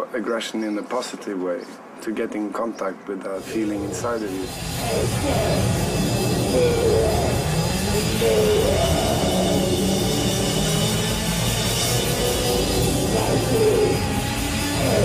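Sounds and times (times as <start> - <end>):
heavy rock music: 3.4 - 15.0.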